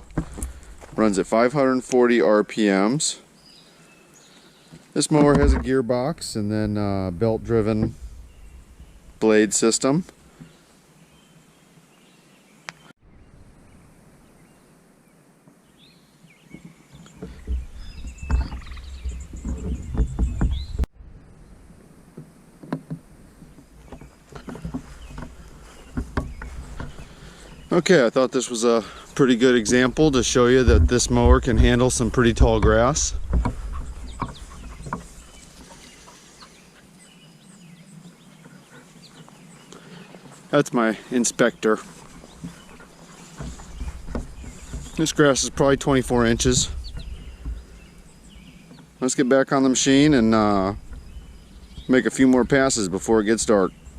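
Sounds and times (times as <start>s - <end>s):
low rumbling and thumping: 5.2s - 9.2s, 17.2s - 27.7s, 28.8s - 36.0s, 41.8s - 48.6s, 50.1s - 53.9s
bird chirps: 6.6s - 21.6s, 23.4s - 53.9s.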